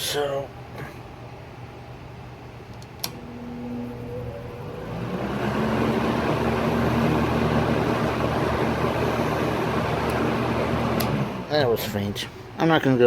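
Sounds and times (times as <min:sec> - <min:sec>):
fan blowing air: 0:00.0 - 0:13.0
fan motor hum: 0:00.0 - 0:13.0
fan switch click: 0:02.7 - 0:03.2, 0:10.0 - 0:10.3, 0:10.9 - 0:11.2.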